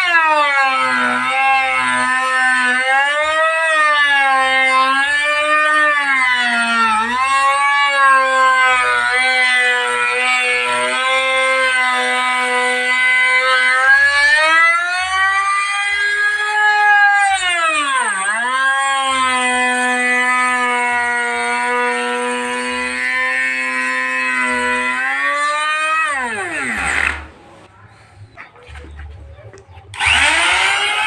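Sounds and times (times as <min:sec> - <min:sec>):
wood-moulding machine whining: 0:00.0 - 0:27.7, 0:29.9 - 0:31.0.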